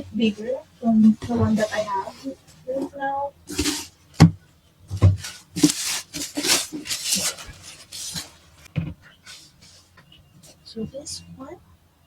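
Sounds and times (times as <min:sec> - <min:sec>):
packaging rustling and rubbing: 0:00.3 - 0:02.9, 0:03.5 - 0:10.0
dull knocks: 0:04.2 - 0:05.8.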